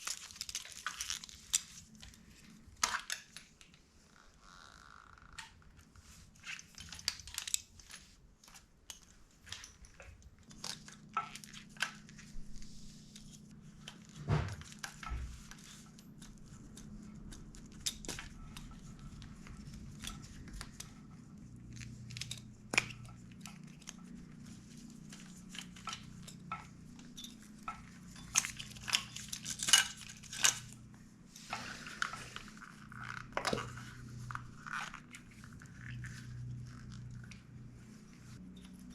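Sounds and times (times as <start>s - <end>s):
tools and metal parts clinking: 0.0s - 2.2s, 6.4s - 12.1s, 21.8s - 30.9s.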